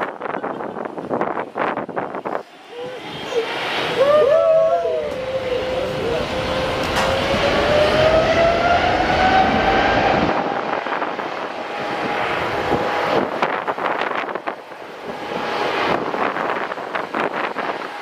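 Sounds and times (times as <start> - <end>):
jet engine whine and rumble: 0.0 - 18.0
wind buffeting microphone: 0.0 - 18.0.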